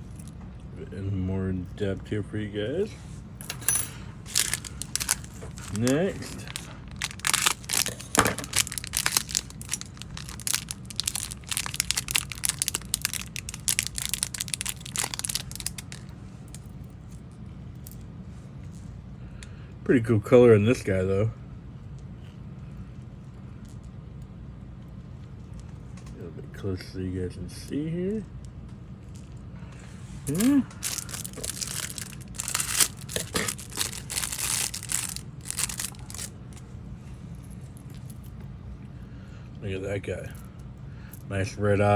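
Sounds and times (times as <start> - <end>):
plastic packaging crinkling and tearing: 4.3 - 16.1, 30.3 - 36.4.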